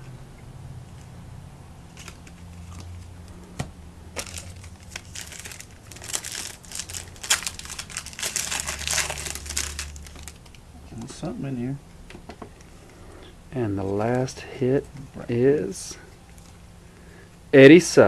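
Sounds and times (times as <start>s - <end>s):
foil wrapper crinkling and tearing: 4.2s - 10.6s.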